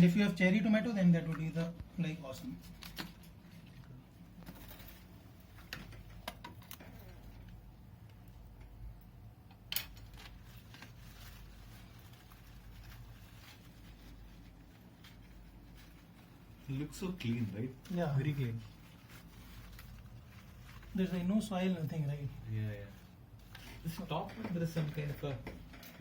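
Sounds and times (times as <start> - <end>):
low steady hum: 0.0 - 26.0
lettuce rustling: 10.0 - 25.8.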